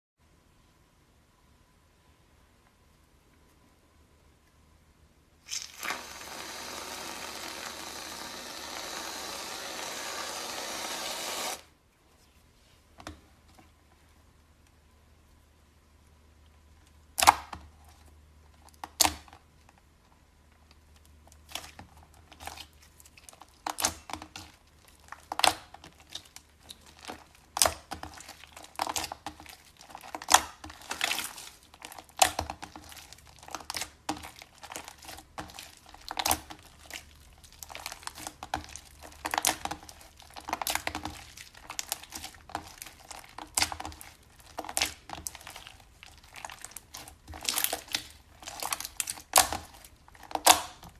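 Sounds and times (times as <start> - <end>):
slime crackling and popping: 21.4 - 50.9.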